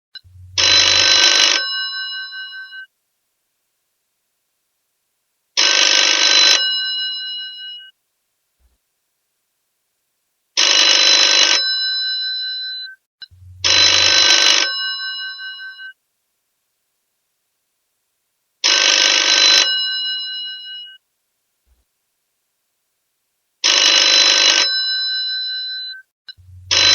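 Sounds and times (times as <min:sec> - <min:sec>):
old telephone bell ringing: 0:00.6 - 0:02.9, 0:10.6 - 0:12.8, 0:13.7 - 0:16.0, 0:18.6 - 0:20.9, 0:23.6 - 0:25.9.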